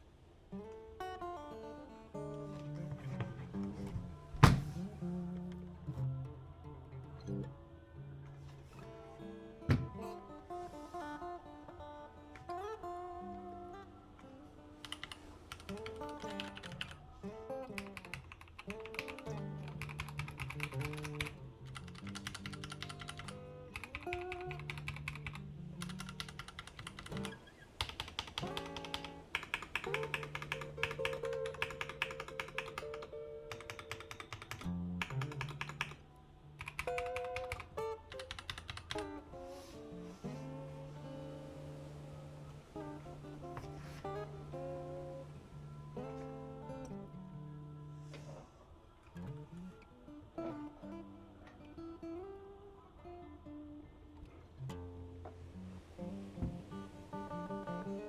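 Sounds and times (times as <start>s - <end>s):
acoustic guitar music: 0.0s - 58.0s
keyboard key clicks: 17.8s - 36.0s.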